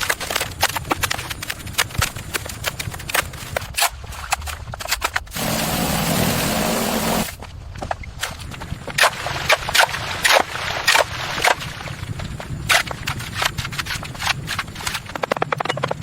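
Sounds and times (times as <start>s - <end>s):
low steady hum: 5.4s - 16.0s.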